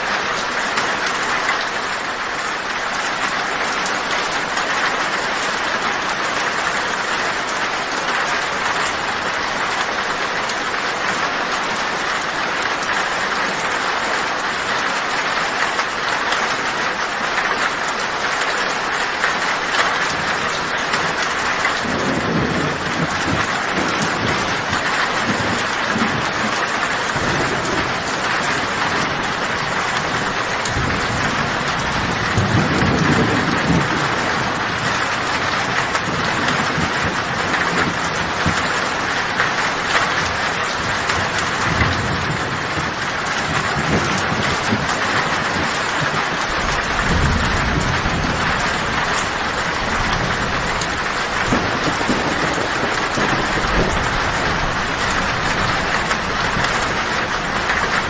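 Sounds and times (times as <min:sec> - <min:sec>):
heavy rain on a tin roof: 0:00.0 - 0:58.0
low thunder rumbling: 0:19.6 - 0:58.0.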